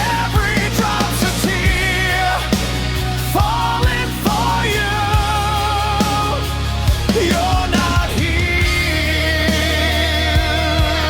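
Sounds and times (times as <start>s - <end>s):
rock music instrumental: 0.0s - 11.0s.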